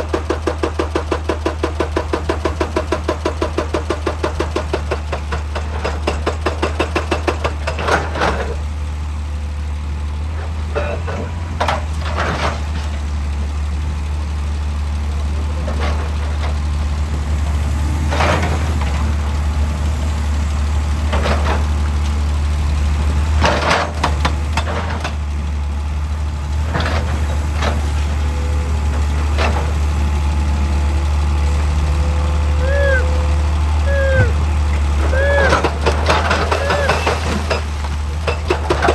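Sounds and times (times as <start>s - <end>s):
excavator diesel engine running: 0.0s - 38.9s.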